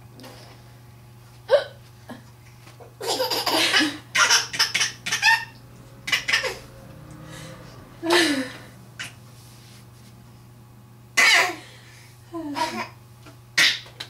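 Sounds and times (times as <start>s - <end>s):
woman hiccuping: 1.5s - 1.8s
child laughing: 3.0s - 6.6s.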